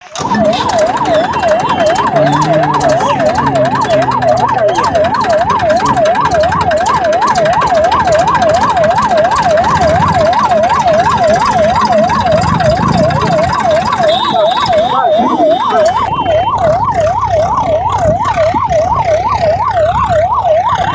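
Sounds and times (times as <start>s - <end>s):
electronic siren yelping: 0.0s - 20.9s.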